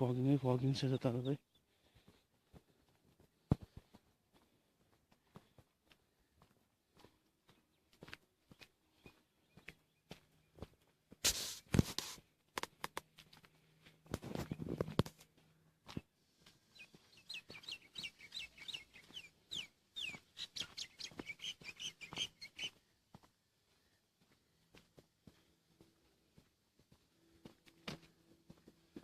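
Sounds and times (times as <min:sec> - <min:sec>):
bird chirping: 0:08.5 - 0:10.6, 0:16.6 - 0:22.9.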